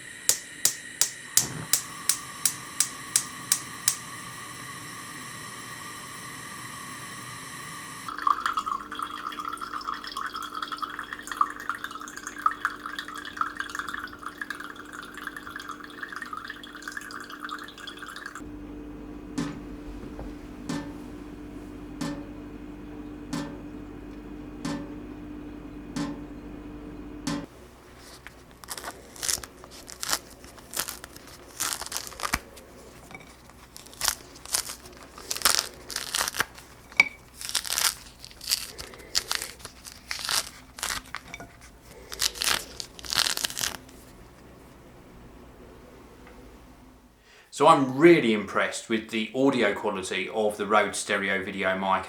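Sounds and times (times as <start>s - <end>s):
steady hum: 0.0s - 47.8s
sharp clicks: 0.3s - 4.0s.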